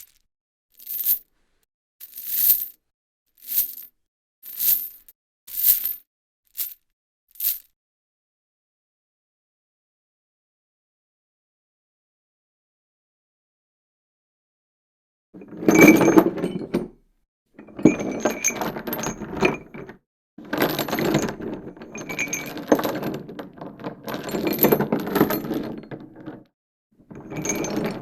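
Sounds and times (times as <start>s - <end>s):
metal chain rattling: 3.4s - 3.9s, 15.4s - 16.9s, 17.6s - 26.5s, 27.1s - 28.0s.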